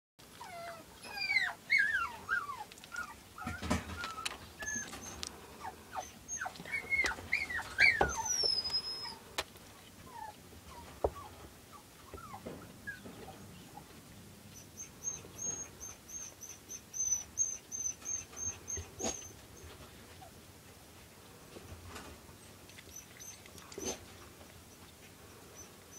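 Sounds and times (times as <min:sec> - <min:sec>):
puppies squeaking and whimpering: 0:00.4 - 0:09.3, 0:10.1 - 0:13.9, 0:14.5 - 0:20.3, 0:22.4 - 0:25.9.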